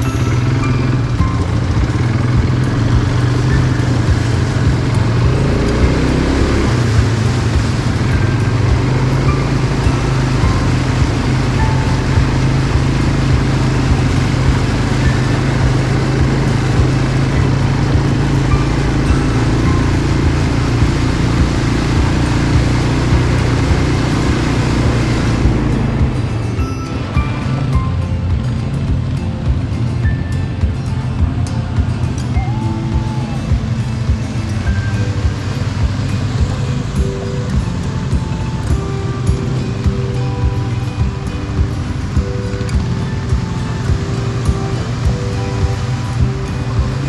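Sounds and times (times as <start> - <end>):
motor humming: 0.0 - 27.7
hissing noise: 0.0 - 29.7
quad bike engine running: 0.0 - 47.0.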